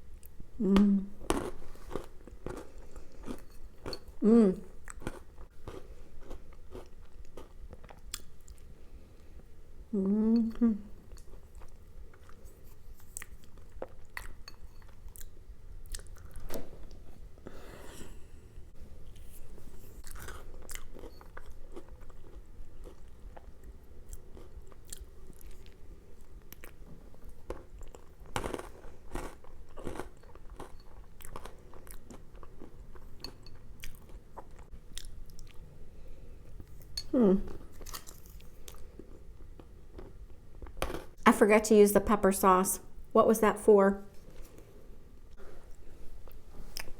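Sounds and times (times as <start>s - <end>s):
chewing and crunching: 1.2s - 4.2s, 4.8s - 8.8s, 11.1s - 17.1s, 19.1s - 35.8s, 36.6s - 41.2s.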